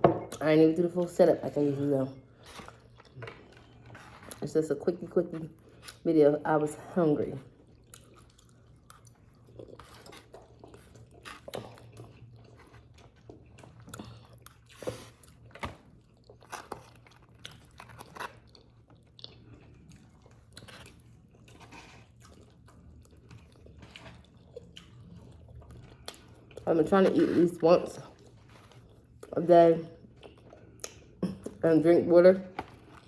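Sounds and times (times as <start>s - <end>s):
person chewing with wet smacks: 2.2s - 4.4s, 7.5s - 27.3s, 27.9s - 31.6s.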